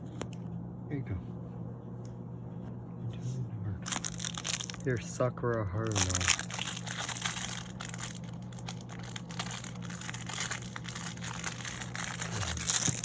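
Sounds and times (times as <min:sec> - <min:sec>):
plastic packaging crinkling: 0:03.8 - 0:05.0, 0:05.8 - 0:13.0.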